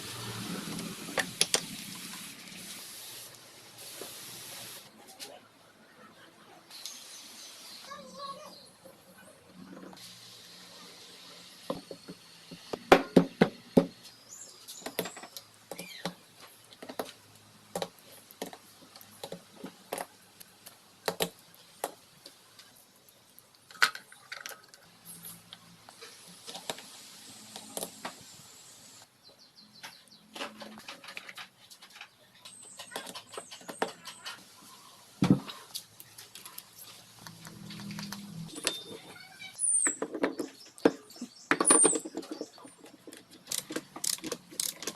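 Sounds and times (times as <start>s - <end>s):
metallic clicks of hand tools: 43.4s - 44.9s.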